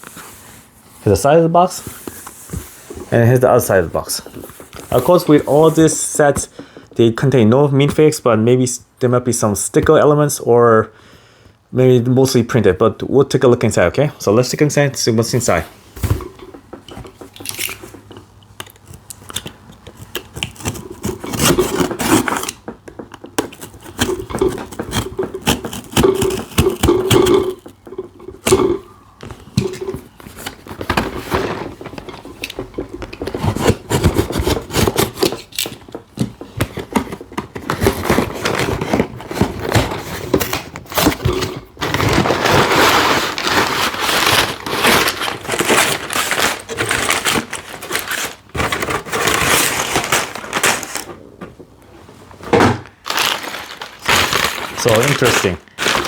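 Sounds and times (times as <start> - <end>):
cardboard tearing and scraping: 19.3 - 22.7, 23.4 - 27.7, 29.5 - 51.2, 53.0 - 56.0
paper bags crinkling: 37.6 - 51.2, 52.8 - 56.0.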